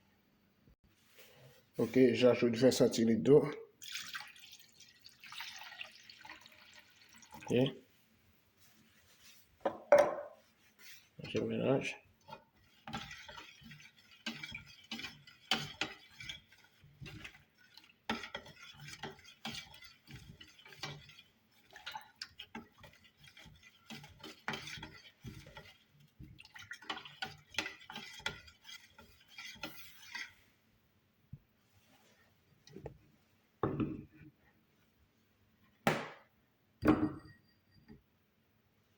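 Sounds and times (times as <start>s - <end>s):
spoon stirring in a jar: 12.3s - 30.4s.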